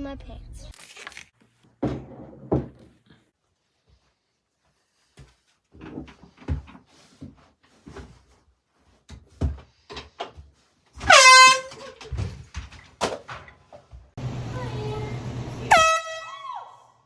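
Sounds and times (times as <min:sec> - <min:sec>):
soft knocks and thumps: 0:05.2 - 0:08.4, 0:09.0 - 0:10.6
air horn blaring: 0:11.0 - 0:11.9, 0:15.7 - 0:16.4.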